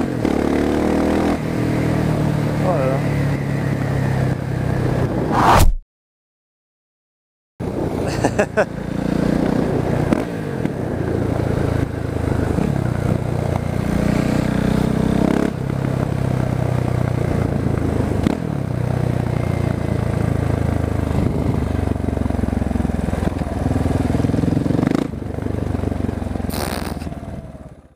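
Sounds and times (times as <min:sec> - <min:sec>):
motorcycle engine pulling hard: 0:20.4 - 0:27.9.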